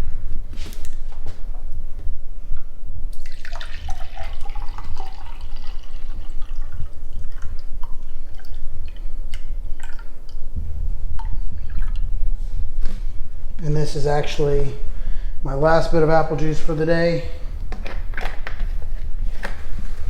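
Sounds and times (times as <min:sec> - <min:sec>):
steady low hum: 0:00.0 - 0:20.0
juice pouring into cup: 0:03.2 - 0:10.1.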